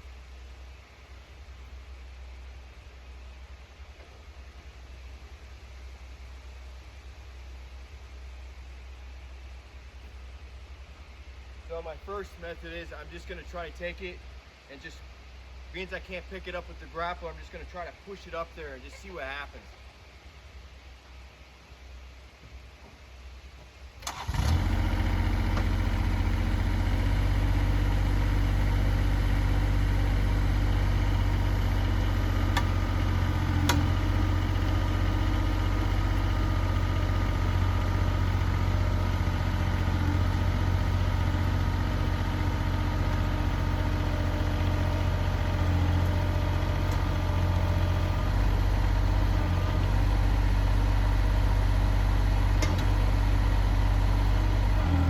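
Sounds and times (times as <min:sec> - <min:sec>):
machine engine running: 0:24.1 - 0:55.0.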